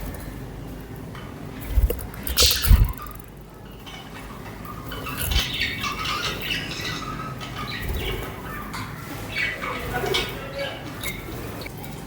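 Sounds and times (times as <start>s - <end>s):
low thumps: 1.7s - 3.3s
budgerigars chirping: 4.1s - 11.7s.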